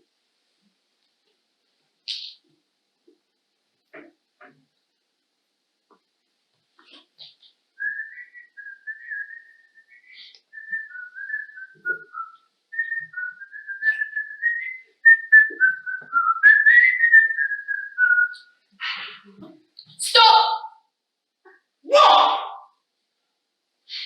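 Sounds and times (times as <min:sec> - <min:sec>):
person whistling: 0:07.8 - 0:18.4.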